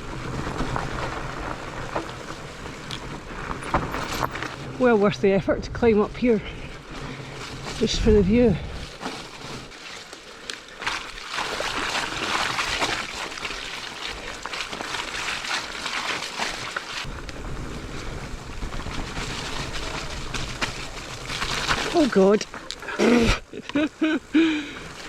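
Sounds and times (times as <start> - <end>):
bike chain and frame rattling: 0.0 - 4.8, 17.0 - 22.9
bike tyres crunching over dirt: 0.0 - 25.0
wind on microphone: 17.0 - 22.0.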